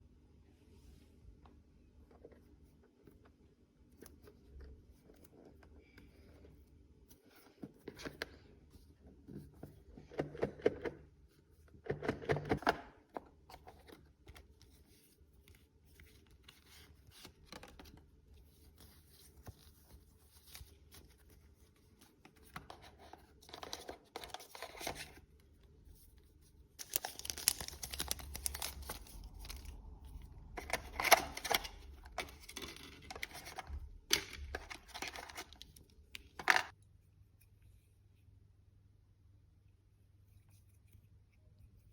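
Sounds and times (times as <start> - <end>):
paper and plastic tearing: 26.8 - 29.8, 30.5 - 35.7.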